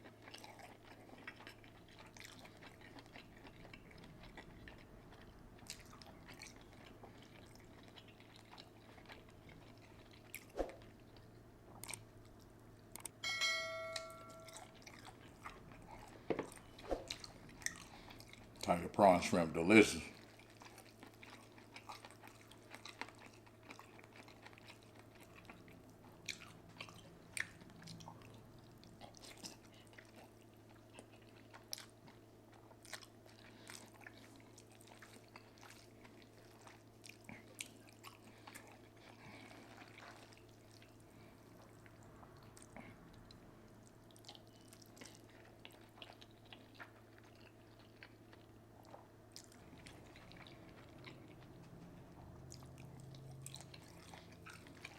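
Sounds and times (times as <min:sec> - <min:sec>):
person chewing and biting: 0:00.0 - 0:13.2, 0:14.4 - 0:18.6, 0:20.2 - 0:54.9
steady low hum: 0:01.9 - 0:20.8.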